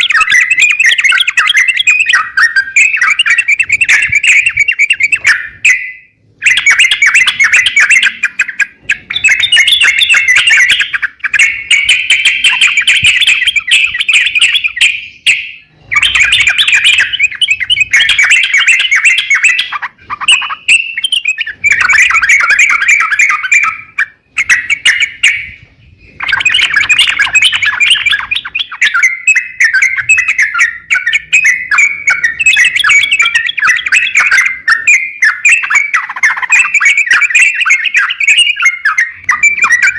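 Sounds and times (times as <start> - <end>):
songbird chattering chirps: 0.0 - 39.9.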